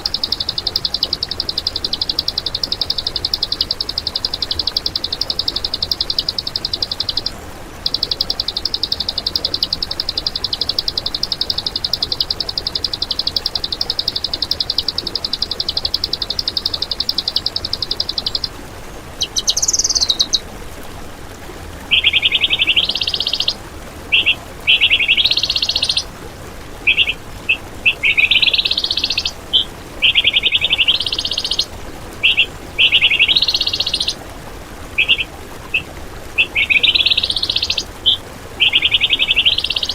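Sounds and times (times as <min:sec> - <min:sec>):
songbird fast trill: 0:00.0 - 0:20.4, 0:21.9 - 0:26.1, 0:26.8 - 0:34.2, 0:35.0 - 0:39.9
songbird rising phrases and chips: 0:07.8 - 0:20.4, 0:21.9 - 0:26.1, 0:26.8 - 0:34.2, 0:34.9 - 0:39.9.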